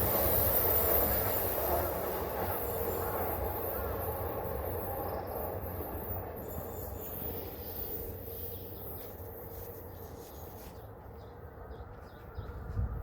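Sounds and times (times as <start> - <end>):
train rumbling: 0.0 - 13.0.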